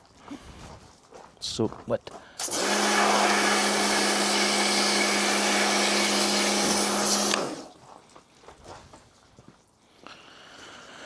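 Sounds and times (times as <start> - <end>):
cleaning tool blowing air: 2.4 - 7.8.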